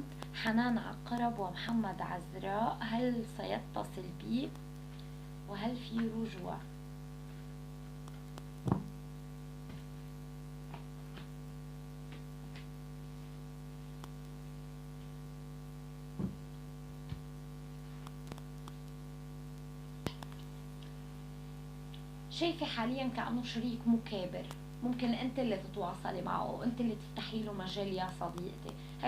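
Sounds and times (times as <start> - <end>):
electrical mains hum: 0.0 - 29.0
soft clicks and taps: 8.0 - 9.0, 18.0 - 21.0.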